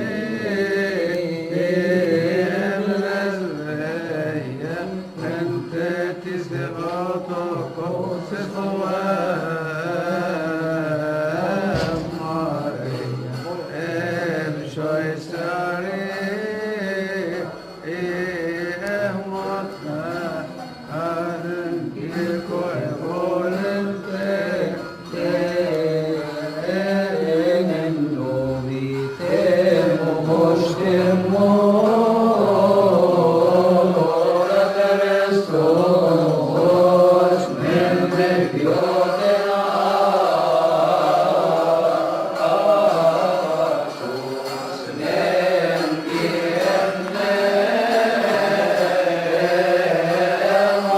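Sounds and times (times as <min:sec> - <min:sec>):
man chanting a hymn: 0:00.0 - 0:50.9.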